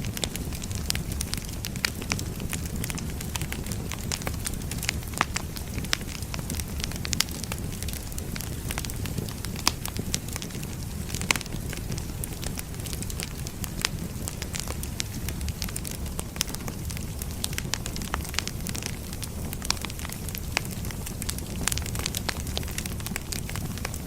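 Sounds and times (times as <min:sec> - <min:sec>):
fire rumbling: 0:00.0 - 0:24.0
logs crackling and popping: 0:00.0 - 0:24.0.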